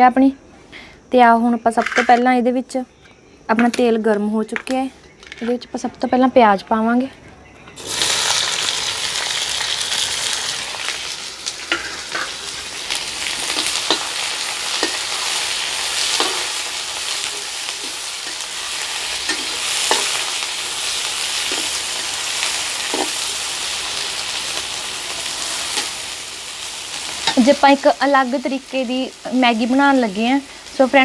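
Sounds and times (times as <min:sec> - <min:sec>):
onions sizzling in hot oil: 0:07.8 - 0:31.0
spoon scraping and knocking pan: 0:11.7 - 0:12.5, 0:13.4 - 0:20.4, 0:21.4 - 0:22.1, 0:22.8 - 0:23.3.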